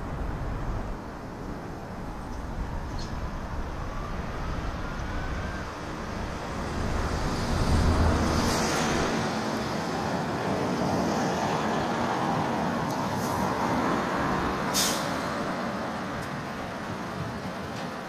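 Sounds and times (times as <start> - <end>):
road traffic noise: 0.0 - 18.0
vehicle passing close by: 2.7 - 15.7.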